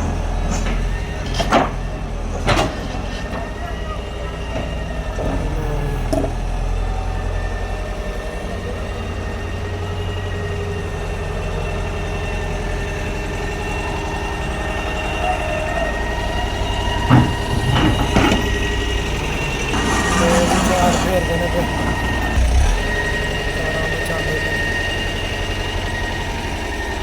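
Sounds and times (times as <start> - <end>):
heavy diesel engine rumbling: 0.0 - 27.0.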